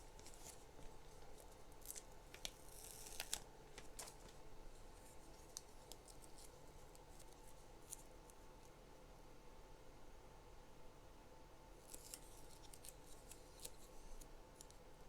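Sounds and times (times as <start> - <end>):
low room hum: 0.0 - 15.0.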